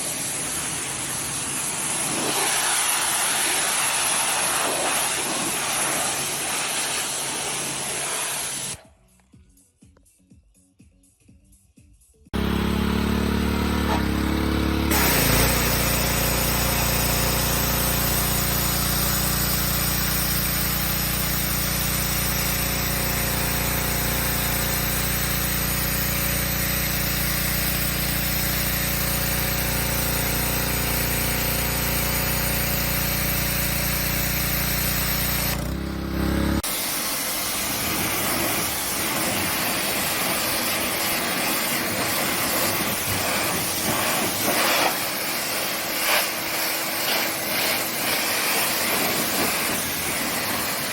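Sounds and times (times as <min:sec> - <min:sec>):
pressure washer motor hum: 0:00.0 - 0:08.8, 0:12.4 - 0:50.9
water jet hiss: 0:00.0 - 0:08.8, 0:14.9 - 0:26.3, 0:36.6 - 0:50.9.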